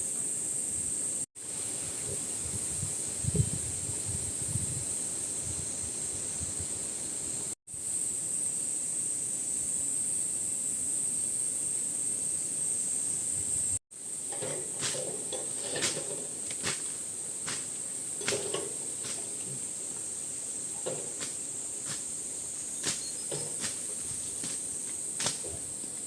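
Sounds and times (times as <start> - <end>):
insects chirring: 0.0 - 26.0
light knocks and clatters: 14.3 - 22.2, 22.8 - 24.6.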